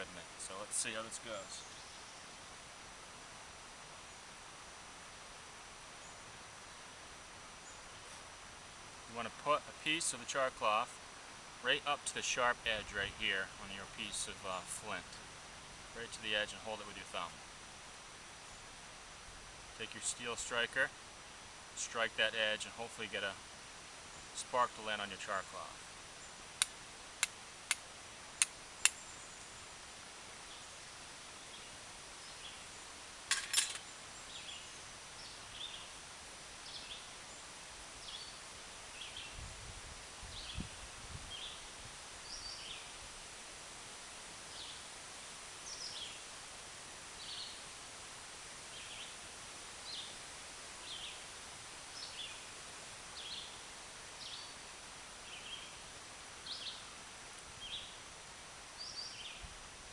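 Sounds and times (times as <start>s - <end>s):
steel striker hitting flint: 33.3s - 33.8s.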